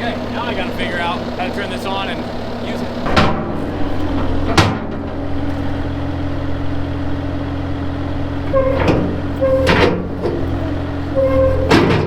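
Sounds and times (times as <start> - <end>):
diesel engine running: 0.0 - 12.0
sharp clunks: 3.0 - 5.7, 8.5 - 10.6, 11.2 - 12.0
hydraulic held tone: 8.3 - 12.0.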